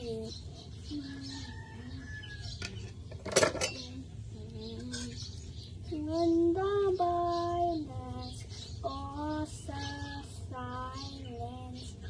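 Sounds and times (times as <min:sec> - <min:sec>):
dishwasher low hum: 0:00.0 - 0:08.2.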